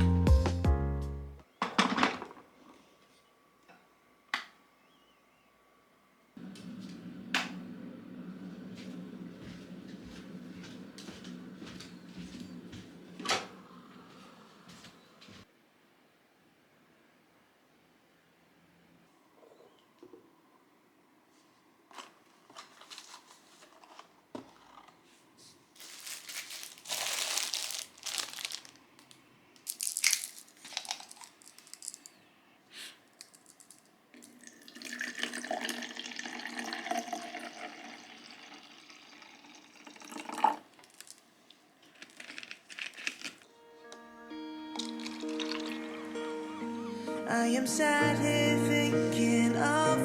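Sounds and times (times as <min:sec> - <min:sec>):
crinkling and rustling: 0:21.4 - 0:32.2, 0:32.8 - 0:34.4, 0:40.8 - 0:43.5, 0:44.8 - 0:45.9.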